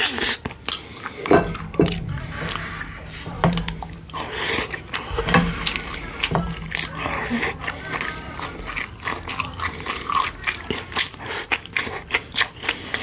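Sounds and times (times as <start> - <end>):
low steady hum: 0.0 - 13.0
wet mouth eating sounds: 0.0 - 13.0
utensils knocking against dish: 1.2 - 10.7.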